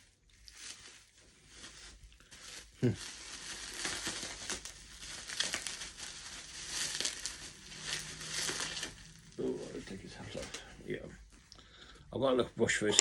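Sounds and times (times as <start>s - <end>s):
packaging crinkling: 0.3s - 10.7s.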